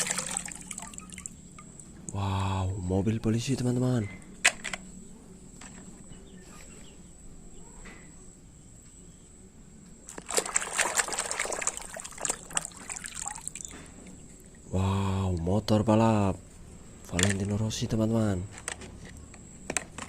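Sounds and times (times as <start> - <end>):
water splashing and trickling: 0.0 - 1.8, 10.1 - 14.7.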